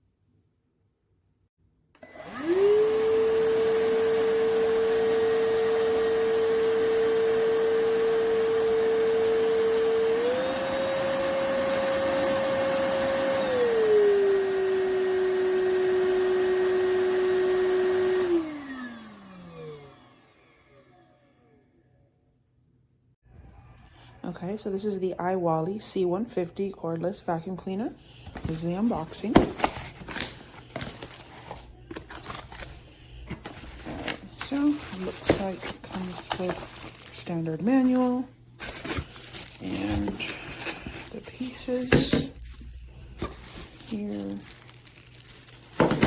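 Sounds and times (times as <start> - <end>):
stick vacuum motor whining: 2.0 - 21.5, 29.4 - 46.0.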